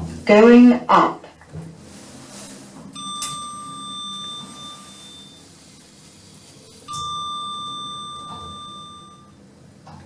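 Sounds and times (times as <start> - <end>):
lift car hum: 0.0 - 10.0
electronic lift chime: 3.0 - 5.7, 6.9 - 9.4.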